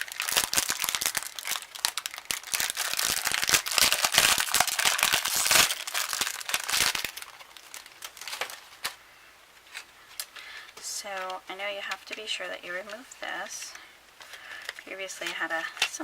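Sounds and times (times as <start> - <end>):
plastic packaging crinkling: 0.0 - 9.0.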